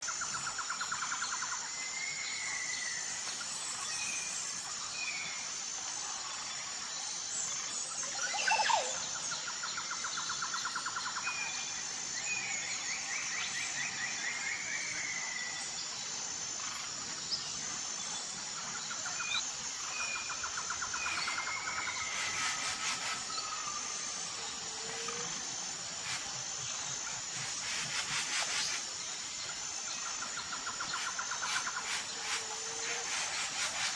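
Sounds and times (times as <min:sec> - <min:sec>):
high-pitched insect drone: 0:00.0 - 0:33.9
birds chirping and trilling: 0:16.6 - 0:33.9.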